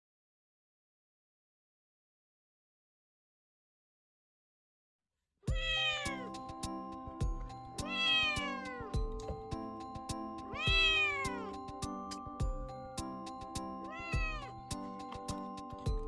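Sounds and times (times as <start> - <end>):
kitten meowing loudly: 5.5 - 6.3, 7.9 - 8.8, 10.6 - 11.5, 13.9 - 14.5
background music with light beat: 5.5 - 16.0.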